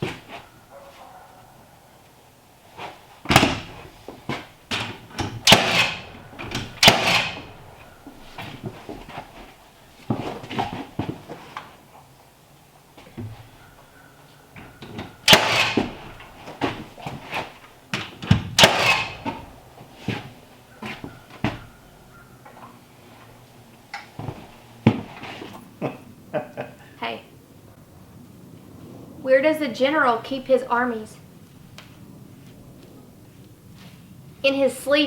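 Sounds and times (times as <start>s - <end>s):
wooden knocks and thuds: 3.2s - 11.7s, 14.6s - 21.8s.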